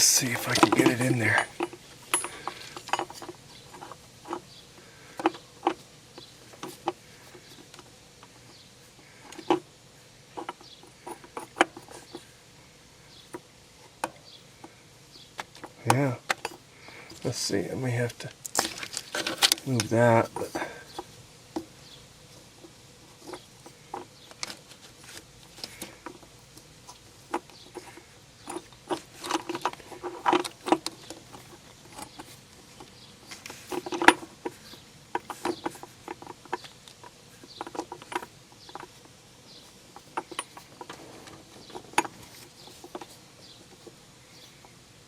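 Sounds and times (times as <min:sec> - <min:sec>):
hand tools clinking on metal: 0:00.0 - 0:04.4.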